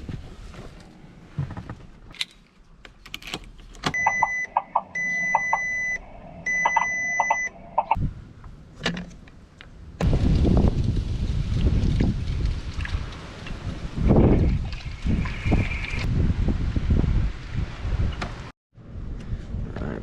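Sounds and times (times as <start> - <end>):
car warning chime beeps: 3.9 - 8.0.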